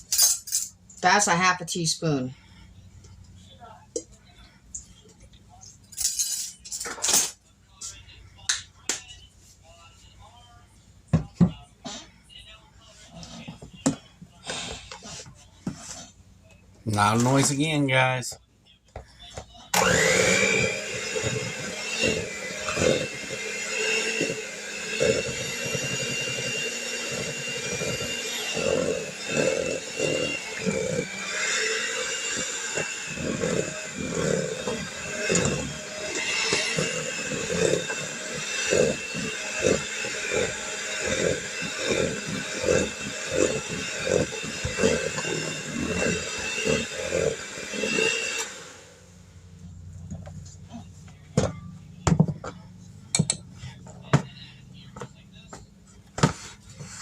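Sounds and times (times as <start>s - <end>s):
electric mixer motor whining: 19.7s - 50.7s.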